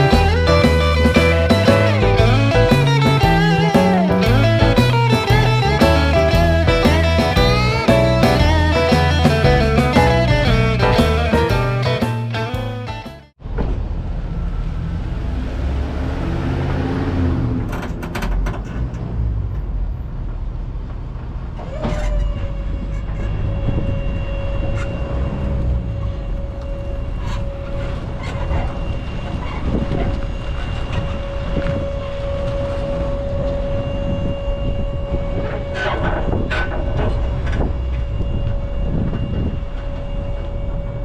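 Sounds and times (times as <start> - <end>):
steady whine: 0.0 - 13.4, 22.3 - 41.0
truck engine rumbling: 0.0 - 41.0.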